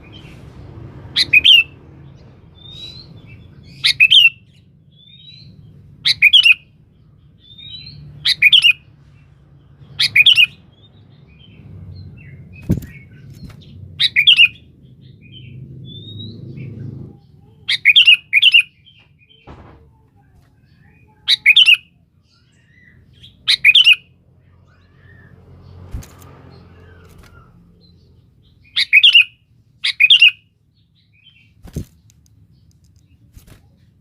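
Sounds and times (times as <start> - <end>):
bulbul calling: 28.6 - 30.4.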